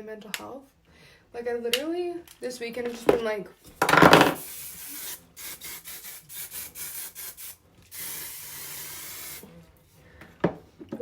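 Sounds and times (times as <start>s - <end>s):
steady hiss: 4.3s - 9.5s.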